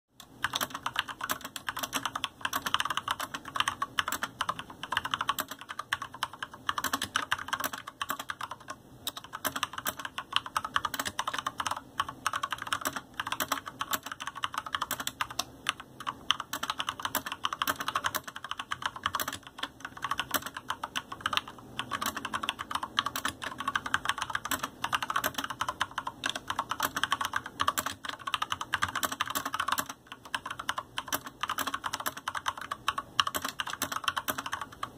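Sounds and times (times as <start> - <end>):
mechanical keyboard typing: 0.2 - 34.9.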